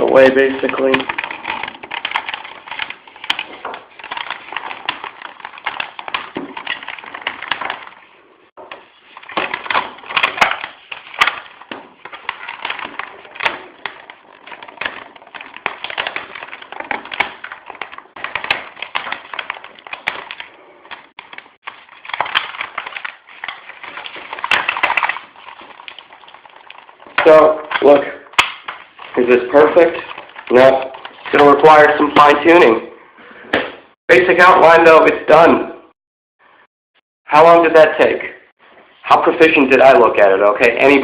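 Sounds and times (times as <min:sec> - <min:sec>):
material crackling and clicking: 0:00.0 - 0:32.7.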